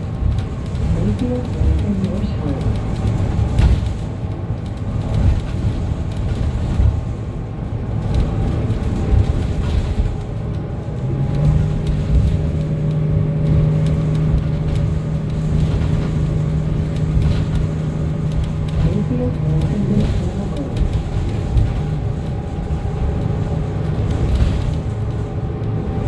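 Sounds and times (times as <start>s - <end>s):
bus engine running: 0.0s - 26.0s
road rumble: 0.0s - 26.0s
steady low hum: 10.8s - 26.0s.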